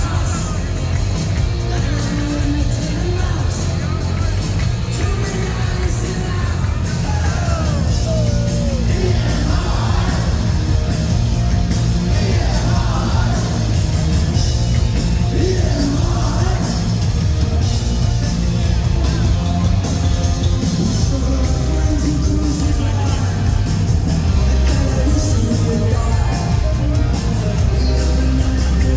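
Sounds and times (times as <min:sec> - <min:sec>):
punk rock band playing live: 0:00.0 - 0:28.9
singer yelling vocals: 0:01.6 - 0:10.7.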